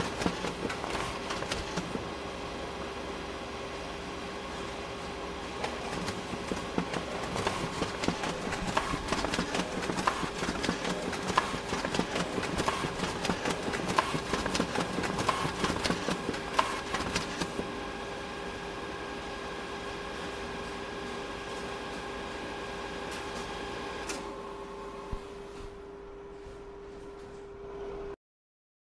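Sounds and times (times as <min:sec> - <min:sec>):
photocopier hum: 0:00.0 - 0:27.8
photocopier clatter: 0:05.7 - 0:17.6.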